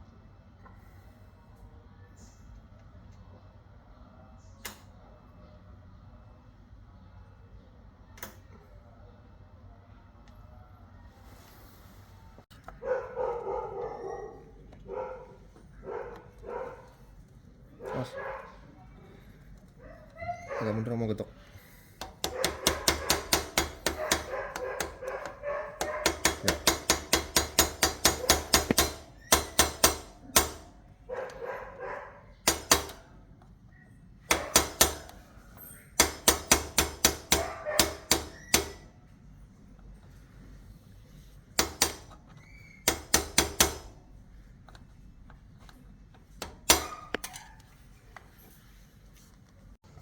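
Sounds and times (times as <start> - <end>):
hammer tapping on metal: 22.0 - 31.3, 32.4 - 33.1, 34.3 - 35.3, 36.0 - 38.9, 41.6 - 42.2, 42.8 - 44.0, 46.4 - 47.4.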